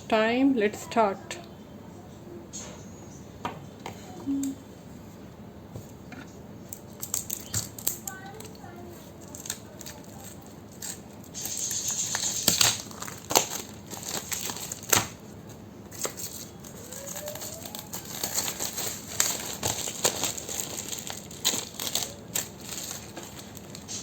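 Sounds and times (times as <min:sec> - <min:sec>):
plastic wrapping crinkling: 0:06.7 - 0:24.0.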